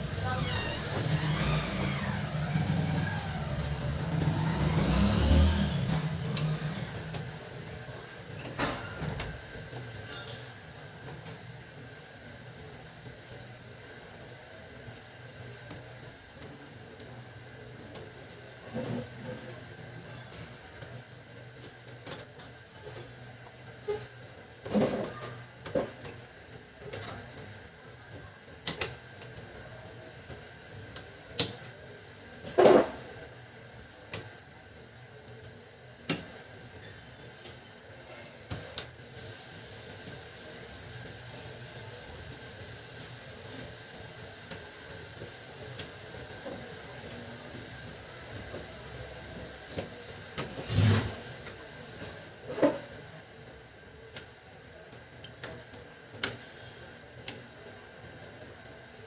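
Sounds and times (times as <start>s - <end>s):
steady hiss: 39.0s - 52.4s.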